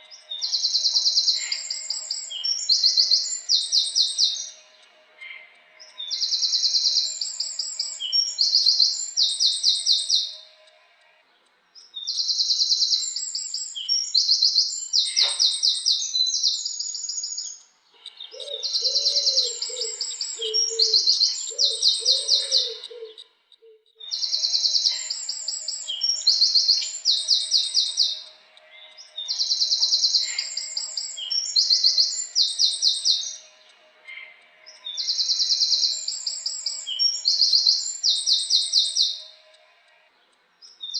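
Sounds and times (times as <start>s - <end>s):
wren singing trills: 0.0s - 10.7s, 11.7s - 39.6s, 40.3s - 40.9s.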